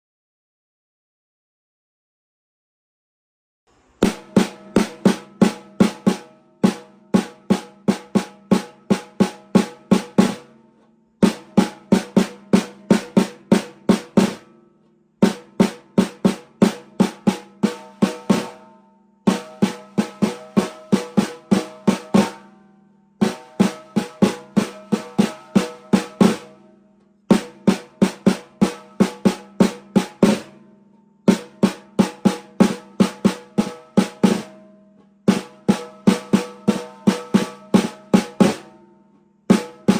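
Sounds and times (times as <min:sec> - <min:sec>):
snare drum strokes: 0:03.7 - 0:10.5, 0:11.2 - 0:14.5, 0:15.2 - 0:18.6, 0:19.3 - 0:22.5, 0:23.2 - 0:26.6, 0:27.3 - 0:30.6, 0:31.3 - 0:34.6, 0:35.3 - 0:38.7, 0:39.5 - 0:39.9.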